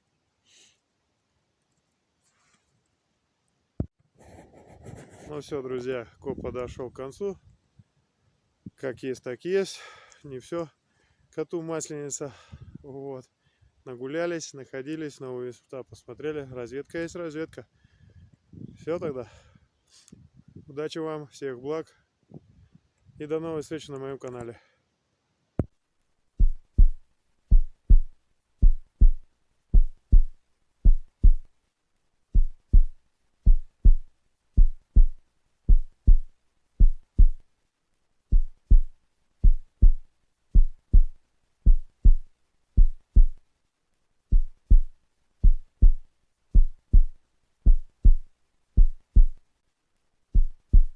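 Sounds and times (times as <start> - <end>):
heartbeat thumps: 26.4 - 31.5, 32.3 - 37.4, 38.3 - 43.4, 44.3 - 49.4, 50.3 - 50.9.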